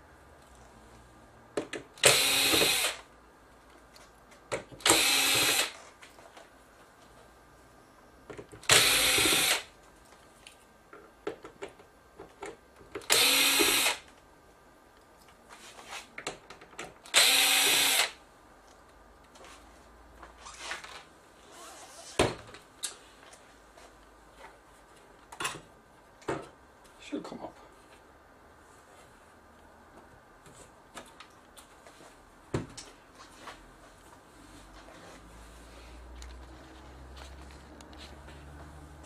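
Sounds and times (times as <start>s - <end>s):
power screwdriver running: 2.0s - 3.0s, 4.8s - 5.8s, 8.6s - 9.7s, 13.1s - 14.0s, 17.1s - 18.2s.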